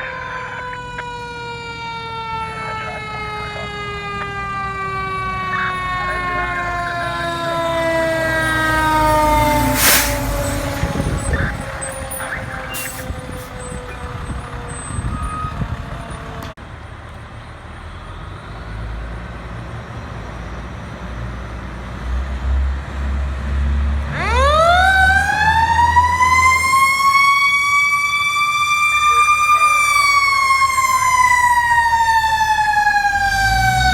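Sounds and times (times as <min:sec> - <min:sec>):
mechanical siren wailing: 0:00.0 - 0:16.6, 0:24.1 - 0:33.9
truck engine rumble: 0:00.0 - 0:33.9.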